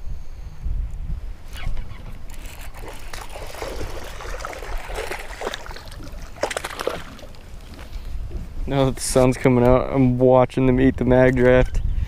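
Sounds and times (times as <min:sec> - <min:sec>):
water splashing and trickling: 0:01.9 - 0:09.2.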